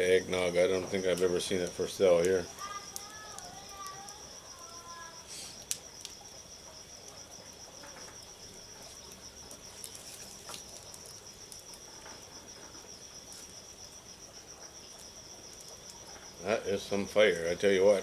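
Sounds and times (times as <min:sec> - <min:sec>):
campfire pops and crackles: 0:00.0 - 0:18.0
insects chirping trill: 0:00.0 - 0:18.0.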